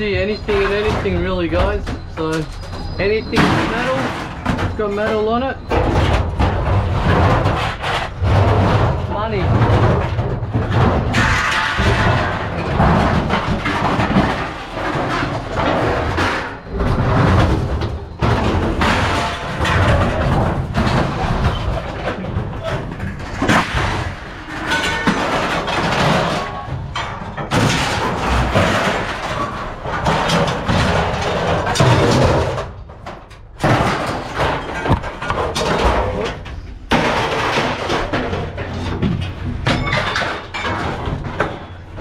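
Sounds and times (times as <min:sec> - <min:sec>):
scrap metal thumps and bangs: 0:00.0 - 0:42.0.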